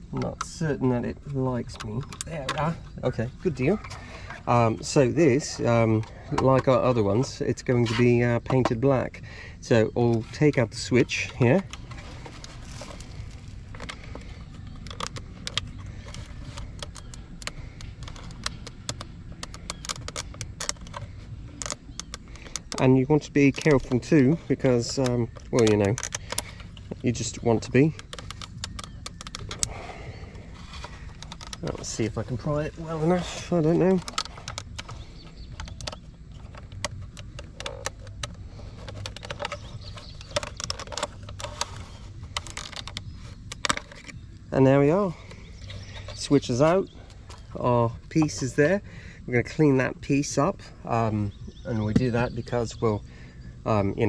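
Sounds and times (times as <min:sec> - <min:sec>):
plastic clicks creaks and scrapes: 0:00.0 - 0:54.0
steady low rumble: 0:00.0 - 0:54.0
plastic clicks and taps: 0:12.4 - 0:22.9, 0:27.9 - 0:29.8, 0:33.8 - 0:44.2.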